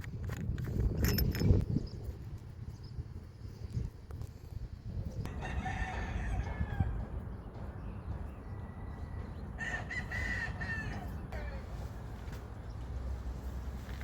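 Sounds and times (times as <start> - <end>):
rooster crowing: 5.3 - 7.0, 9.6 - 11.7.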